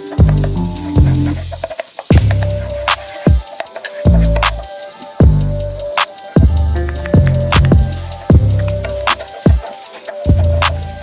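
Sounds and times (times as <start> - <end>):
background music with beat: 0.0 - 11.0.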